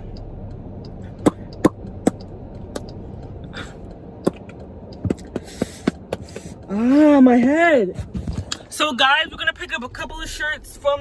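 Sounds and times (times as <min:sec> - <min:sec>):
low steady hum: 0:00.0 - 0:11.0
sharp clicks: 0:00.1 - 0:06.2.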